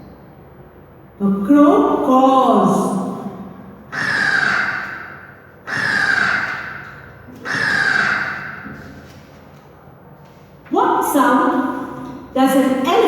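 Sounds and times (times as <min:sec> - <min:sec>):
crow cawing: 0:03.9 - 0:09.3.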